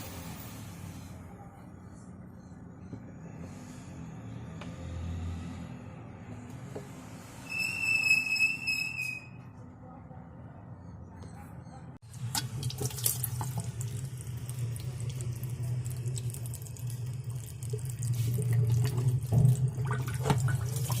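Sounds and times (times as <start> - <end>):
water running and splashing: 12.2 - 21.0.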